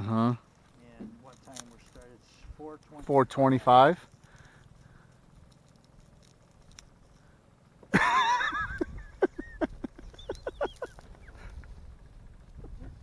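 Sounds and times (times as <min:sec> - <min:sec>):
birds calling: 0:07.0 - 0:12.1.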